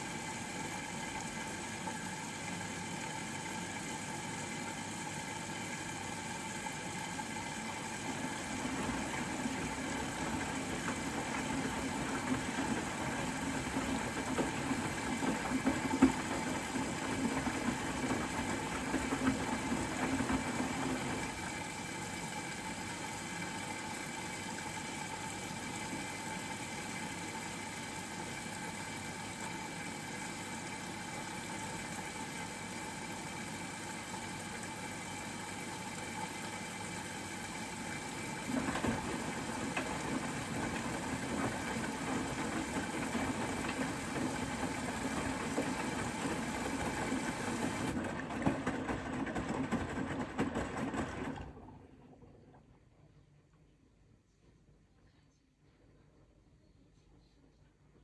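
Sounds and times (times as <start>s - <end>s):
washing machine drum tumbling: 7.6s - 22.0s, 37.4s - 51.7s.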